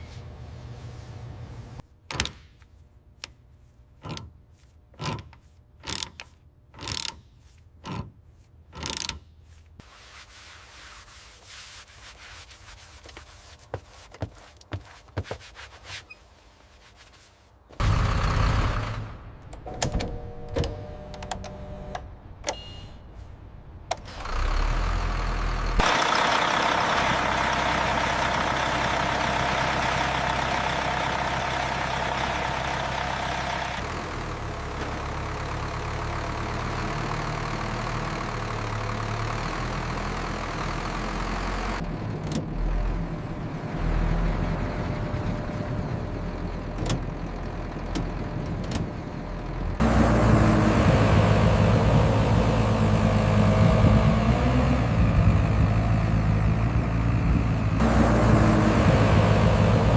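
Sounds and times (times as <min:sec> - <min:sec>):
sharp clicks and knocks: 0:05.0 - 0:09.3
heavy machinery engine running: 0:17.8 - 0:22.0, 0:24.1 - 0:59.9.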